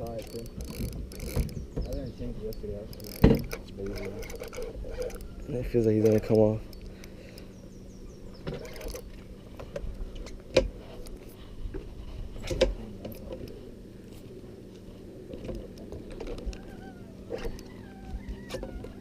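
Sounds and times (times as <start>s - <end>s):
fishing reel gears clicking: 0.0s - 7.5s, 8.6s - 9.1s
steady low hum: 0.0s - 19.0s.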